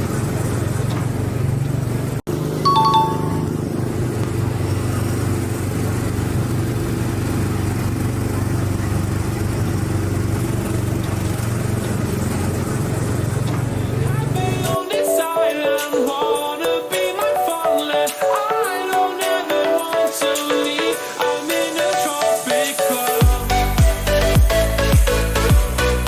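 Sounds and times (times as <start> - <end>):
machine humming: 0.4 - 14.7.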